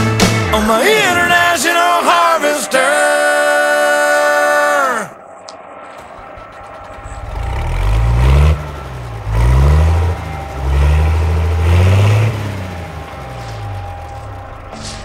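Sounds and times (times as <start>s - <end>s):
heavy vehicle engine accelerating: 5.9s - 15.0s.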